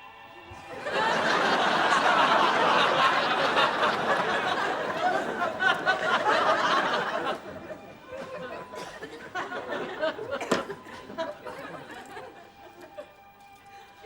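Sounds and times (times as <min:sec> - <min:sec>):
audience laughing: 0:00.6 - 0:13.2.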